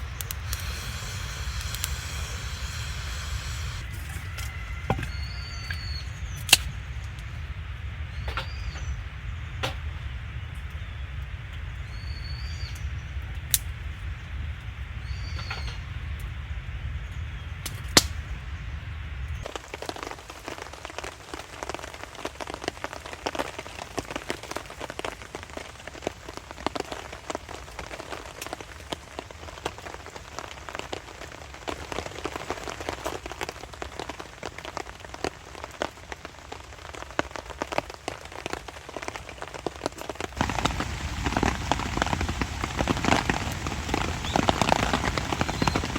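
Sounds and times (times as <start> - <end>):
sharp clicks: 0.0 - 3.8
rain pattering: 0.0 - 4.0, 19.3 - 45.9
bird chirps: 0.0 - 7.0, 43.4 - 45.9
low steady rumble: 0.0 - 10.6.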